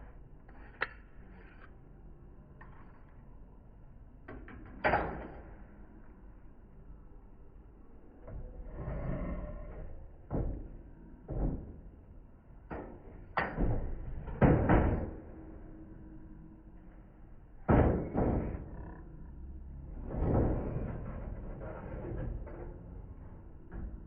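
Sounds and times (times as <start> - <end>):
knocks and bangs of tools: 12.7 - 15.2, 17.7 - 18.8.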